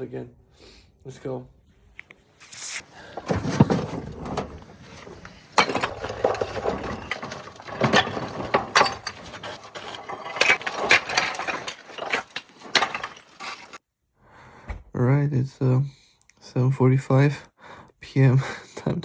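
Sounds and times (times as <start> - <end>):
mechanical clattering and clicking: 2.8 - 13.8.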